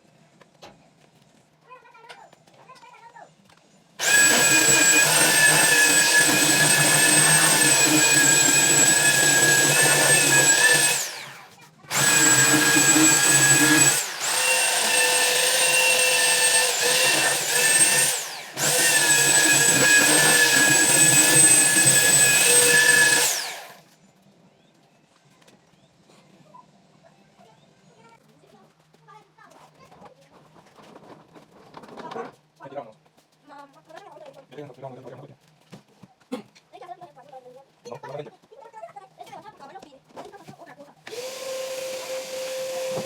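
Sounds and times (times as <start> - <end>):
electric motor whining: 4.0 - 23.8, 41.1 - 43.0.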